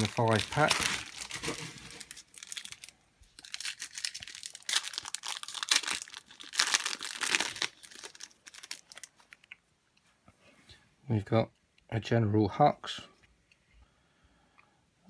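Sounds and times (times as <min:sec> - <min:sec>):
plastic wrapper tearing and crinkling: 0:00.0 - 0:09.6.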